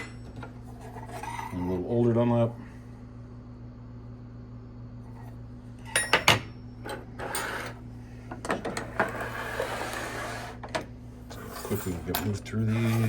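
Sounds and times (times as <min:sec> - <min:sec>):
metal scraping over a surface: 0:08.8 - 0:10.6, 0:11.3 - 0:13.0.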